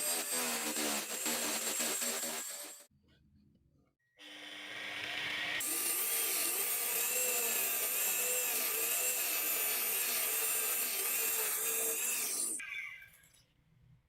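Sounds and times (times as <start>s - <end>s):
lathe tool scraping spinning wood: 0.0s - 2.9s.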